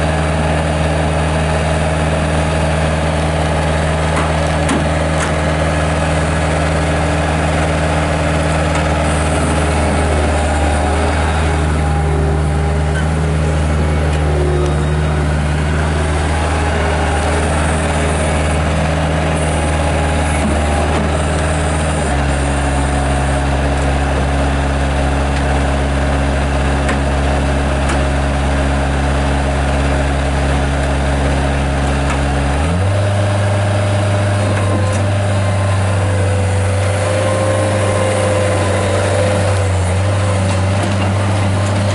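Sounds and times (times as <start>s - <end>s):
diesel engine running: 0.0s - 41.9s.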